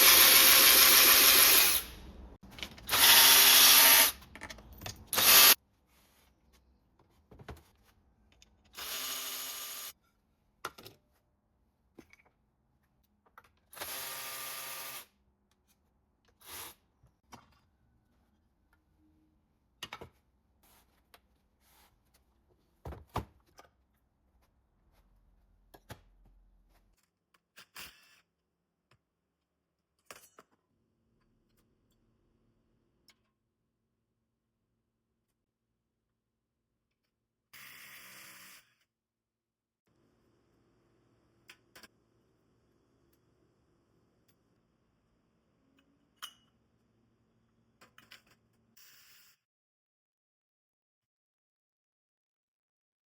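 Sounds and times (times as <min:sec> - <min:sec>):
power drill running: 0:00.0 - 0:01.9, 0:02.9 - 0:04.2, 0:05.2 - 0:05.6.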